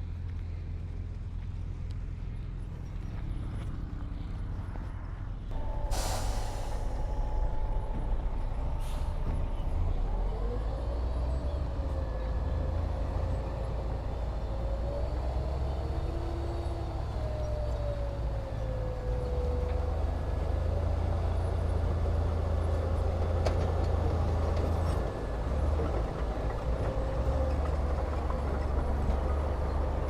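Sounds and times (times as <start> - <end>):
diesel machinery rumbling: 0.0 - 30.0
air hiss: 5.8 - 7.1.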